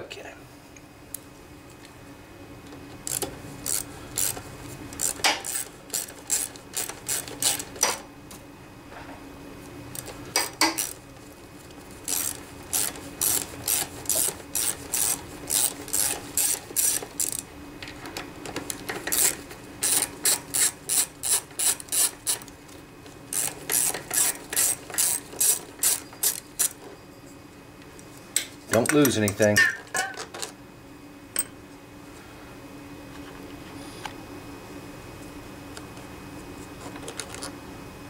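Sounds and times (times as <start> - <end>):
socket ratchet clicking: 5.0 - 8.0, 23.3 - 26.8.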